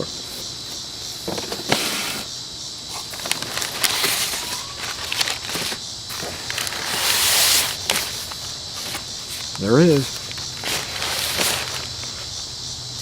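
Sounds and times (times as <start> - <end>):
packing material rustling: 2.9 - 12.4.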